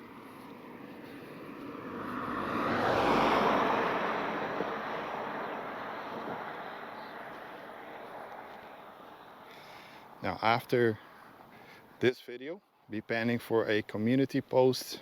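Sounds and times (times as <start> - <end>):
car passing by: 0.1 - 10.2.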